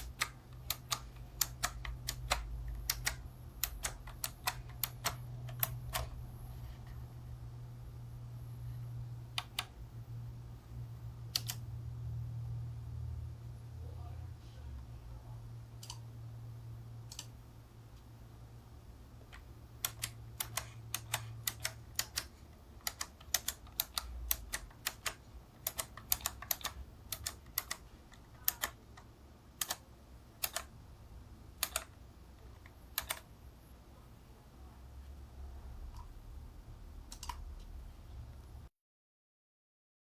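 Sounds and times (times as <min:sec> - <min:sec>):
keypad key clicks: 0:00.0 - 0:06.2, 0:09.3 - 0:09.8, 0:11.3 - 0:11.6, 0:19.3 - 0:30.7, 0:31.6 - 0:32.0, 0:32.6 - 0:33.3, 0:37.0 - 0:37.6.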